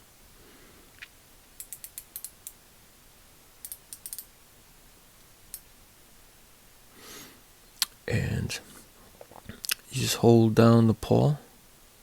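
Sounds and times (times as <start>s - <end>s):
ratchet clicking: 3.6s - 4.3s.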